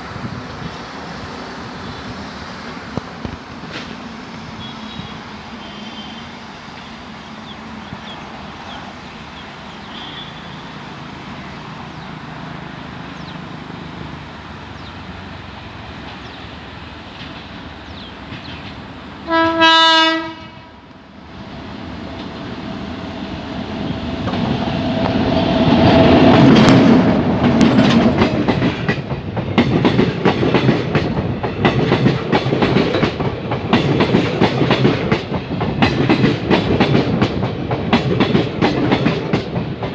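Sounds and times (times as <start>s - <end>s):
train passing: 0.0s - 39.9s
locomotive horn blast: 4.5s - 6.4s, 9.8s - 10.9s, 19.2s - 20.8s
wheels clattering over rail joints: 24.2s - 39.9s.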